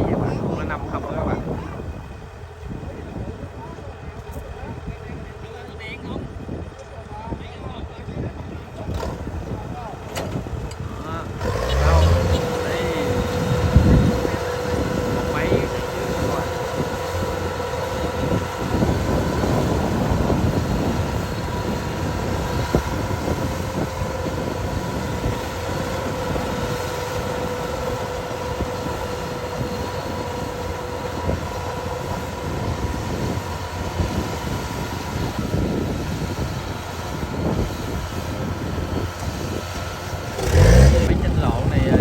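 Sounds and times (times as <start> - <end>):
combine harvester engine drone: 0.0 - 42.0.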